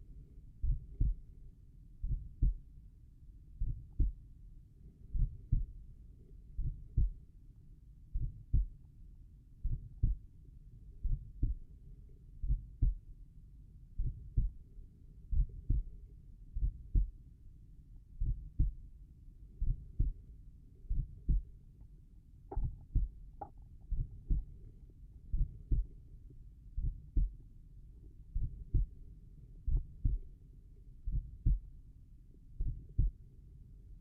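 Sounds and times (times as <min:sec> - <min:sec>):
heartbeat thumps: 0:00.6 - 0:01.3, 0:02.0 - 0:02.6, 0:03.6 - 0:04.2, 0:05.1 - 0:05.8, 0:06.6 - 0:07.2, 0:08.2 - 0:08.8, 0:09.6 - 0:10.2, 0:11.0 - 0:11.7, 0:12.4 - 0:13.0, 0:14.0 - 0:14.6, 0:15.3 - 0:16.0, 0:16.6 - 0:17.2, 0:18.2 - 0:18.8, 0:19.6 - 0:20.2, 0:20.9 - 0:21.6, 0:22.5 - 0:24.7, 0:25.3 - 0:26.0, 0:26.8 - 0:27.4, 0:28.4 - 0:29.0, 0:29.7 - 0:30.3, 0:31.1 - 0:31.7, 0:32.6 - 0:33.2.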